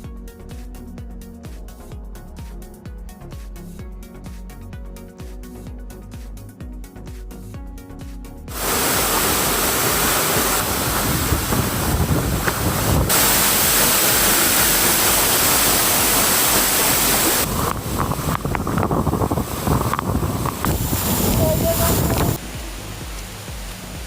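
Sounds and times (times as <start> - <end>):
background music: 0.0 - 12.1, 20.7 - 24.0
waterfall rushing: 8.5 - 24.0.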